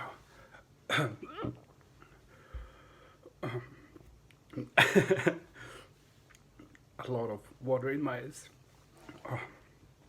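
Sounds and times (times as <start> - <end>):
man breathing: 2.0 - 3.4, 5.5 - 6.0.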